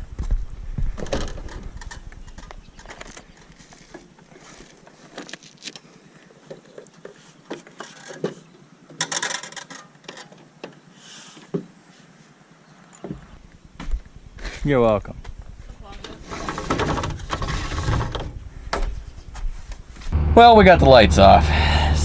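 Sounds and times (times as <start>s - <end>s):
rustling scrape: 3.6s - 5.6s.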